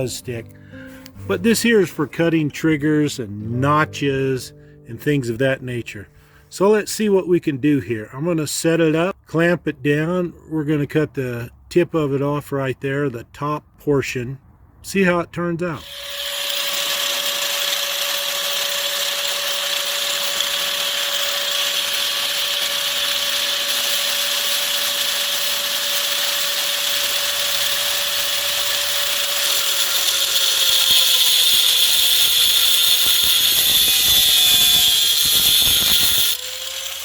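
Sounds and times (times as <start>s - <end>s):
power tool cutting steel: 15.8s - 37.0s.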